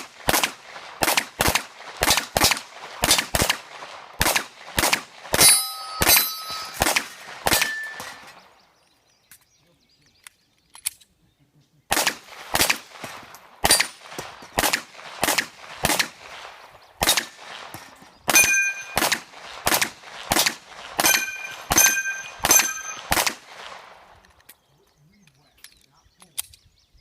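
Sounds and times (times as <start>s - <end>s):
pistol shots: 0.0s - 8.5s, 11.9s - 24.4s
steel targets ringing: 5.4s - 8.4s, 18.3s - 19.2s, 21.0s - 23.3s.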